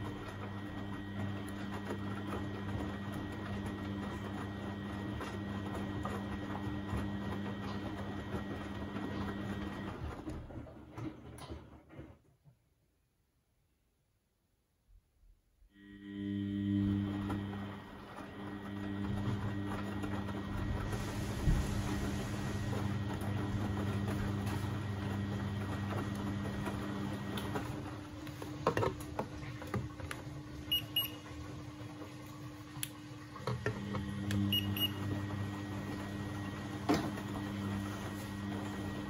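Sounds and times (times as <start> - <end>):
washing machine drum humming: 0.0 - 12.4, 15.8 - 39.0.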